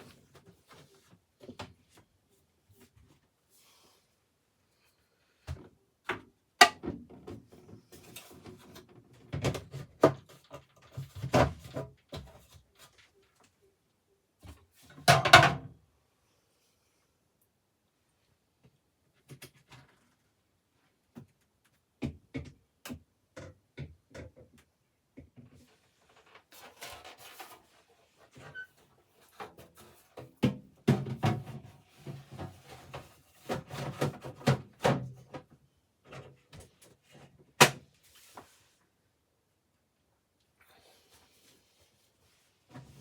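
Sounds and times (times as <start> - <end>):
scraping and rustling: 25.6 - 30.3.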